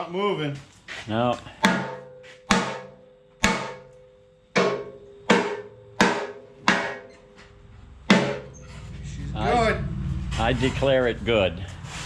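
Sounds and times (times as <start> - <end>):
hammer striking steel frame: 1.6 - 7.5, 8.1 - 8.7.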